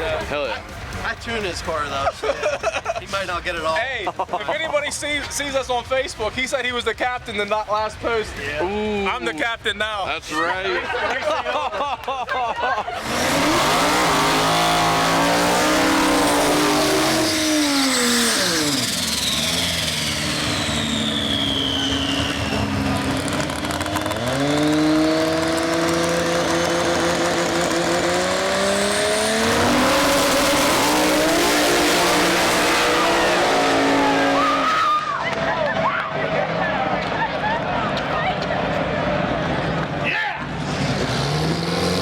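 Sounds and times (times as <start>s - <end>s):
engine revving hard: 13.0s - 35.0s, 40.6s - 42.0s
turbo whine: 13.0s - 35.0s.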